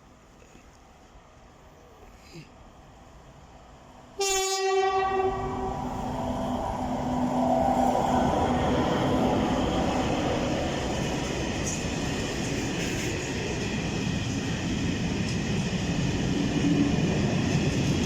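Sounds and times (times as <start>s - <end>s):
diesel locomotives rumbling past: 2.8s - 18.0s
diesel locomotive horn blast: 4.2s - 5.9s.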